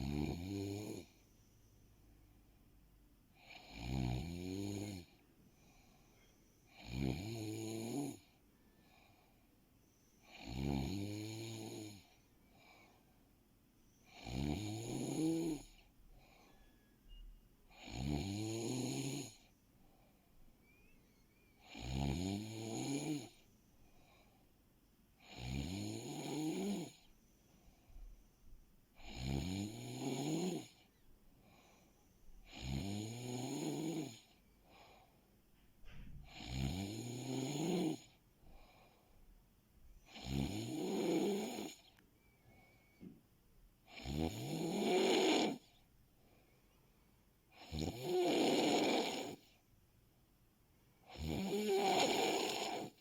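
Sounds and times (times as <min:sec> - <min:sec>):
person snoring: 0:00.0 - 0:01.2, 0:03.4 - 0:05.2, 0:06.7 - 0:08.3, 0:10.2 - 0:12.1, 0:14.1 - 0:15.8, 0:17.7 - 0:19.5, 0:21.6 - 0:23.4, 0:25.2 - 0:27.1, 0:29.0 - 0:30.8, 0:32.5 - 0:34.9, 0:36.3 - 0:38.1, 0:40.1 - 0:41.9, 0:43.9 - 0:45.8, 0:47.6 - 0:49.5, 0:51.1 - 0:53.0.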